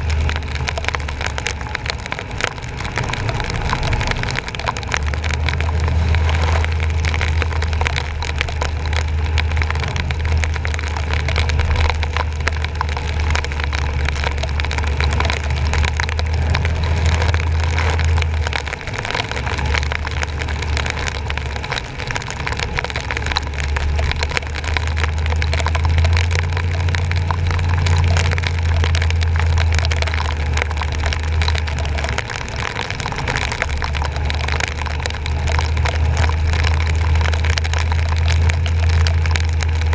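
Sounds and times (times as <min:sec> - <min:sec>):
rain and water spray hissing: 0:00.0 - 0:39.9
truck engine and tyres rumbling: 0:00.0 - 0:39.9.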